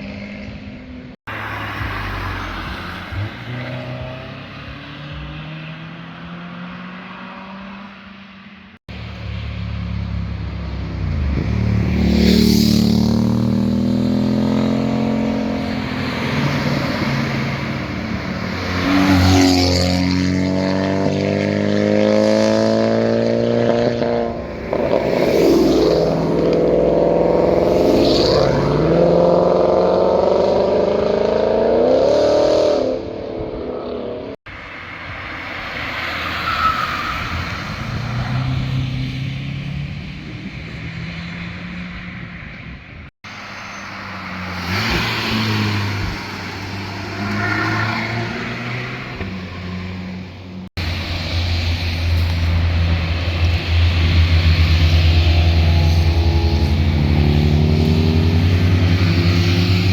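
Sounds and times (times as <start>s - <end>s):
car engines accelerating hard: 0.0s - 8.2s, 8.9s - 34.4s, 37.0s - 59.9s
quieter car engine: 34.2s - 59.9s.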